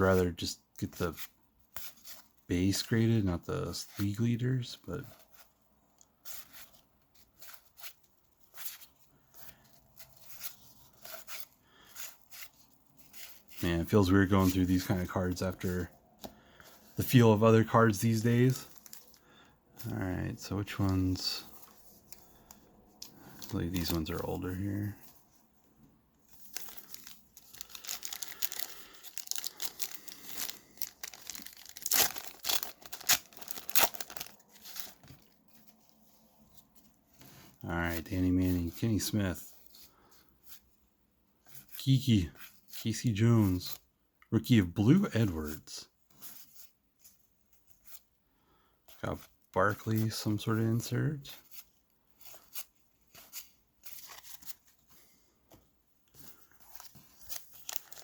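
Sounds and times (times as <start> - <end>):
cardboard cards rustling: 0.0 - 40.8, 48.8 - 58.0
wrapper crinkling: 26.3 - 35.9, 56.1 - 58.0
wrapper ripping: 26.5 - 35.4, 56.6 - 58.0.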